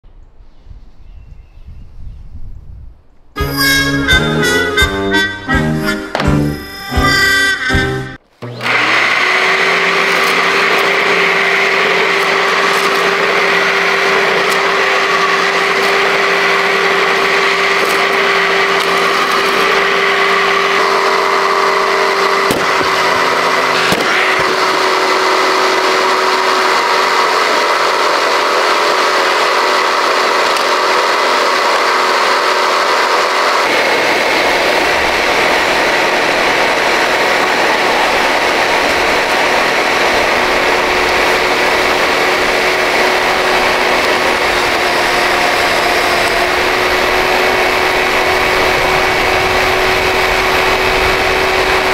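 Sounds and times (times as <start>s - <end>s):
vacuum cleaner running: 3.4s - 51.9s.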